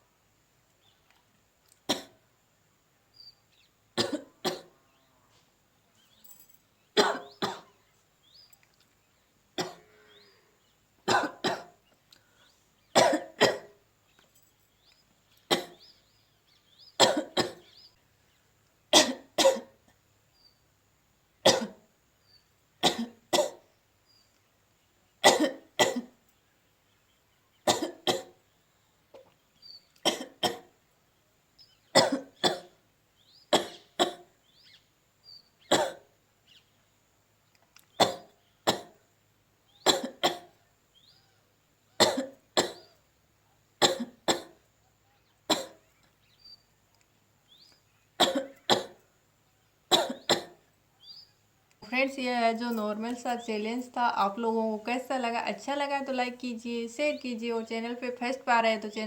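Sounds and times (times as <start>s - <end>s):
woman coughing: 4.0s - 4.7s, 7.0s - 7.7s, 11.1s - 11.8s, 13.0s - 13.8s, 17.0s - 17.6s, 19.0s - 19.7s, 21.5s - 21.8s, 25.2s - 26.1s, 27.7s - 28.4s, 30.1s - 30.7s, 32.0s - 32.7s, 35.7s - 36.1s, 39.9s - 40.5s, 42.0s - 42.8s, 45.5s - 45.8s, 48.2s - 49.0s, 49.9s - 50.6s.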